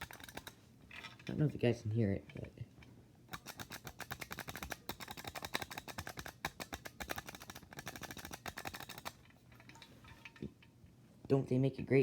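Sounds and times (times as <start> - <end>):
elevator buttons rapid clicking: 0.0 - 0.6, 3.3 - 9.2.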